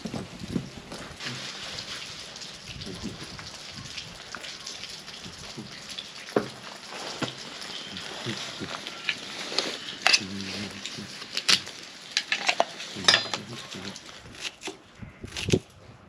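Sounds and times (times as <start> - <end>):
metal cookware clinking: 12.2 - 13.8.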